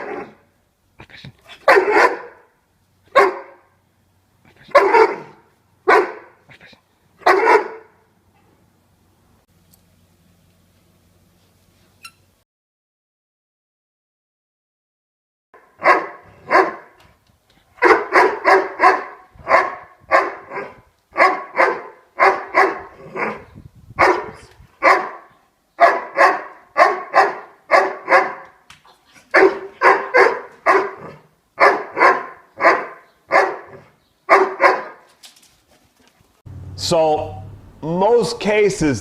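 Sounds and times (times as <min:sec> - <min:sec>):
dog barking: 0:00.0 - 0:00.4, 0:01.6 - 0:03.7, 0:04.6 - 0:06.4, 0:07.2 - 0:08.0, 0:15.6 - 0:17.0, 0:17.8 - 0:28.6, 0:29.3 - 0:35.1.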